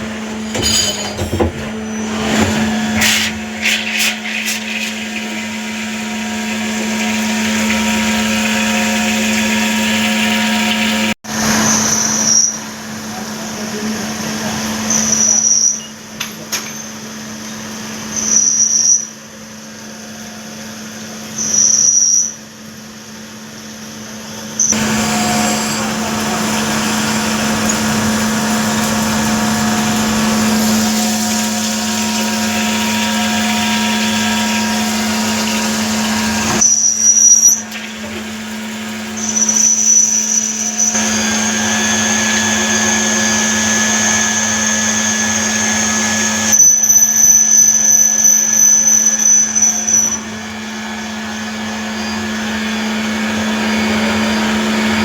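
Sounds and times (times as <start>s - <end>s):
lathe machine hum: 0.0s - 11.6s, 24.7s - 46.6s, 47.2s - 55.0s
rough metal cutting: 0.0s - 12.1s, 24.7s - 55.0s
high machine whine: 22.8s - 55.0s.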